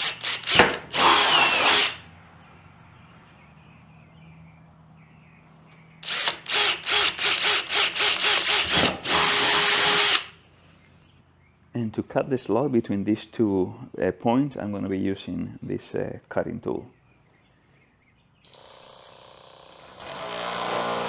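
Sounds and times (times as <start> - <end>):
power drill boring plastic: 0.0 - 2.0, 6.0 - 10.3, 18.6 - 21.0.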